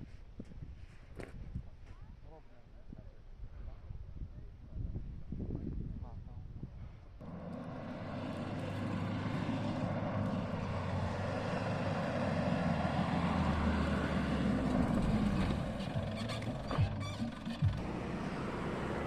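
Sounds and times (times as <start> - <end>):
vehicle engine running: 7.2 - 19.0.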